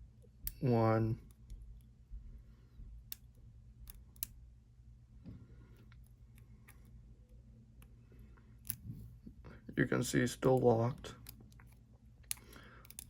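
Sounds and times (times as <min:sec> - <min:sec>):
lock pick clicking in padlock: 0:12.3 - 0:13.0.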